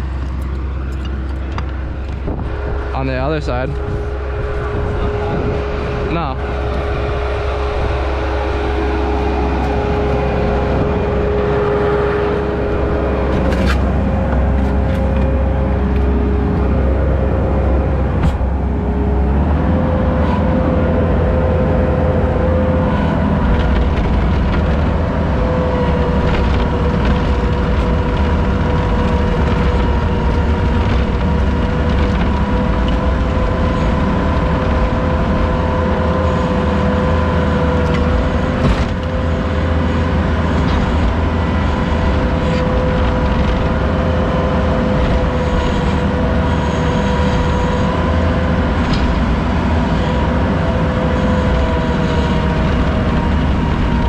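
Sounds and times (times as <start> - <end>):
heavy vehicle engine running: 0.0 - 54.0
steady engine whine: 0.0 - 54.0.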